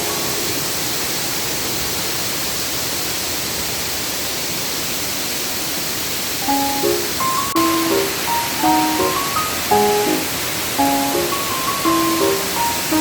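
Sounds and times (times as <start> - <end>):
piano-like background music: 0.0 - 1.1, 6.4 - 13.0
waterfall rushing: 0.0 - 13.0.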